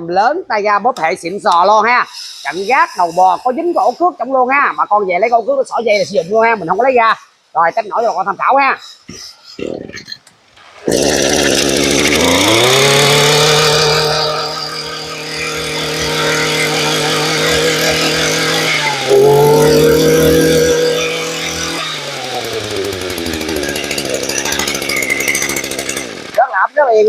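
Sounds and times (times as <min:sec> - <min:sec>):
brush cutter engine revving: 0:09.6 - 0:26.7.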